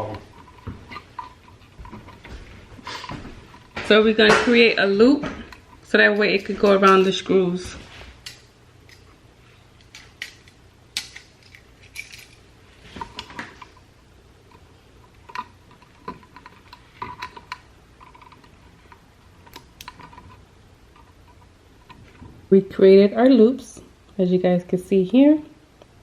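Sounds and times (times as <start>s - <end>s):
wire clicks and metallic taps: 14.5s - 22.2s.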